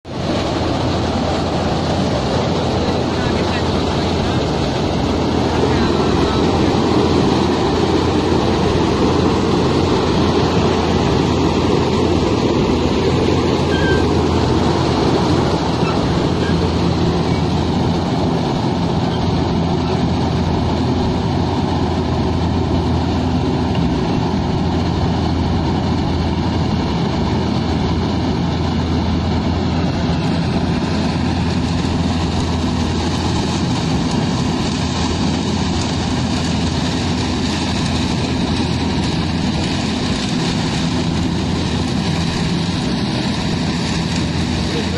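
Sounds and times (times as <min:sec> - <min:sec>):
combine harvester engine drone: 0:00.0 - 0:44.9
cutting and threshing machinery: 0:00.0 - 0:44.9.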